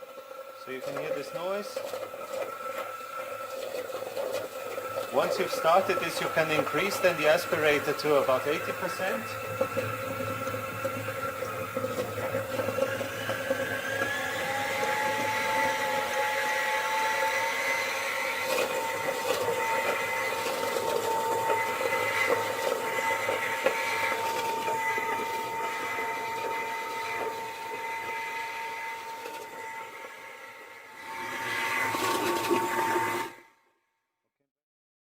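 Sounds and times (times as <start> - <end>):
blower motor whine: 0.0 - 33.5.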